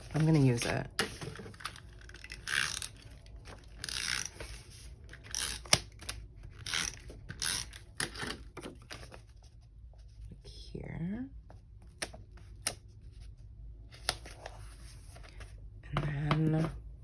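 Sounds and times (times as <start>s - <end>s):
paper rustling and scraping: 0.0s - 5.7s, 8.5s - 10.2s, 14.0s - 15.6s.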